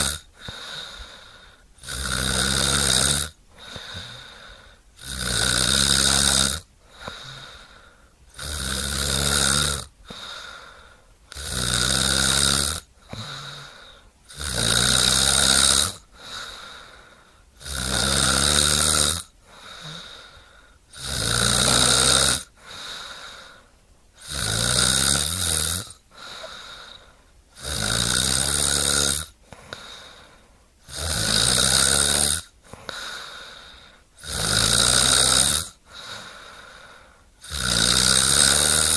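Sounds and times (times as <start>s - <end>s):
quiet breath: 0.0s - 1.9s, 3.4s - 5.0s, 6.7s - 8.4s, 9.9s - 11.4s, 12.9s - 14.3s, 16.0s - 17.6s, 19.3s - 20.9s, 22.5s - 24.2s, 25.9s - 27.6s, 29.3s - 30.9s, 32.5s - 34.2s, 35.7s - 37.5s
loud snoring: 0.0s - 23.6s, 24.2s - 30.2s, 30.8s - 38.9s.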